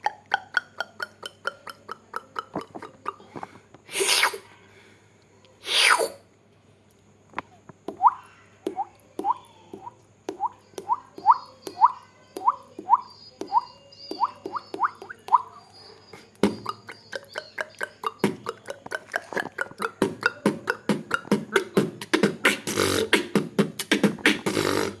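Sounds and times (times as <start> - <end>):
beatbox water-drop bloops: 0.0 - 4.4, 7.9 - 15.6, 16.2 - 25.0
beatbox clicks and snares: 16.2 - 25.0.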